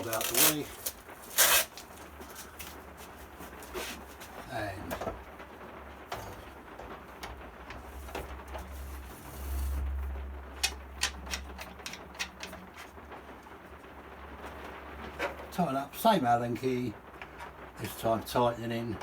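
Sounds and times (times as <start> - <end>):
steady low hum: 0.7 - 19.0
metal parts clicking and tapping: 10.6 - 13.0.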